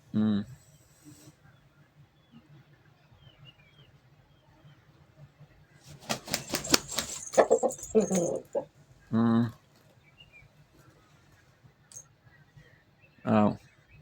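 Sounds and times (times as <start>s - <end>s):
faint bird chirps: 0.1s - 14.0s
bird wings flapping: 5.9s - 8.7s.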